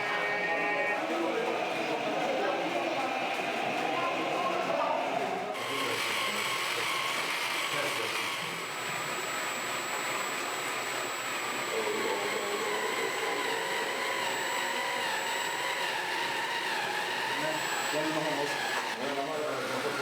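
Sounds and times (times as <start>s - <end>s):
background chatter of voices: 0.0s - 20.0s
model truck motor whining: 5.6s - 20.0s.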